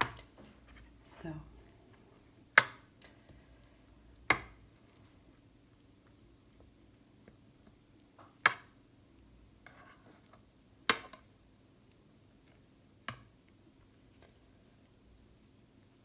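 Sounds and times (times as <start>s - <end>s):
light knife scrape: 9.6s - 10.2s.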